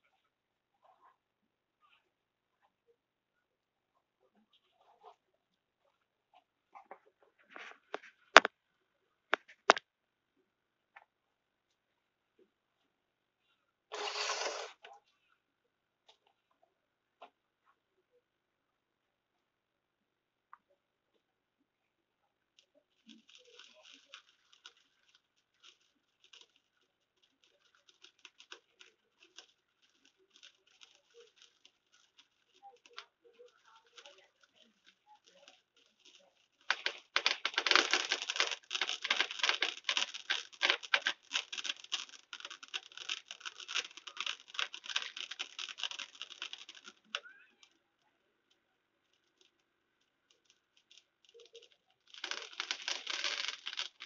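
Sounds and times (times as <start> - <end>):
fireworks crackling and popping: 6.7 - 8.5, 9.3 - 9.8, 13.9 - 15.0, 22.6 - 47.8, 48.5 - 54.0.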